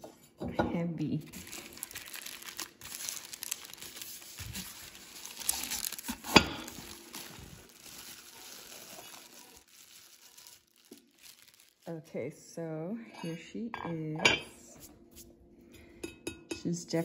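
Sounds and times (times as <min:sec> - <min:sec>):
plastic packaging crinkling: 0:01.3 - 0:12.1.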